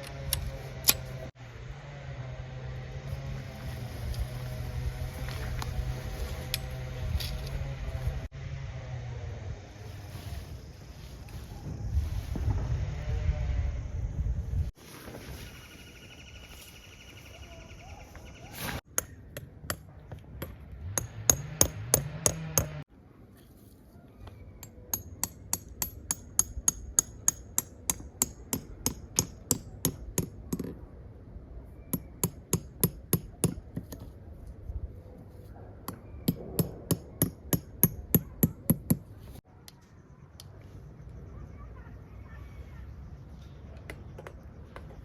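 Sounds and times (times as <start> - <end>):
rapid hammer strikes on stakes: 20.4 - 22.8, 24.9 - 30.6, 32.0 - 34.0, 35.9 - 39.1.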